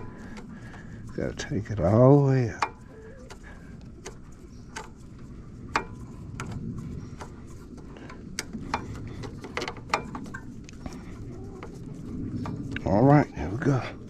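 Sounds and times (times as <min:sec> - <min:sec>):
low handling rumble: 0:00.0 - 0:14.0
sharp metallic clicks and taps: 0:05.7 - 0:10.8.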